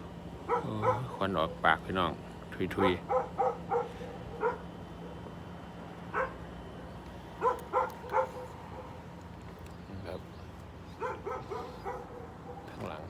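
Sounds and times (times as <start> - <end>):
dog barking: 0.5 - 1.7, 2.8 - 5.2, 6.1 - 6.4, 7.4 - 9.0, 10.9 - 12.8.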